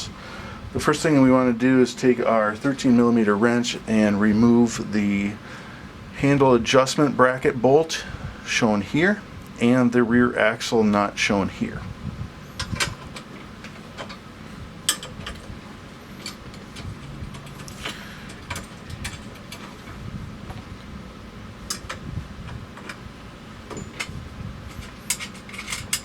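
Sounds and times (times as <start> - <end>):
low steady hum: 0.0 - 26.0
wrench clicking and clinking on metal: 14.9 - 15.5, 24.8 - 26.0.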